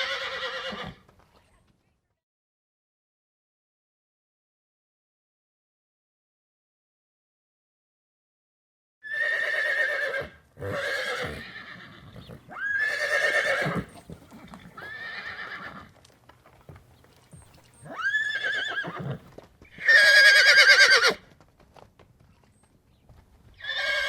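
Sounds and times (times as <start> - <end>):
horse neighing: 0.0 - 1.0, 9.0 - 15.9, 17.8 - 21.2, 23.6 - 24.0.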